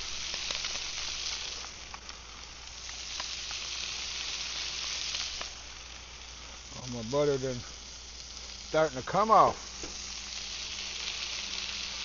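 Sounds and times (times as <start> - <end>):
fish sizzling on a grill: 0.0 - 12.0
small pops and crackles: 0.0 - 12.0.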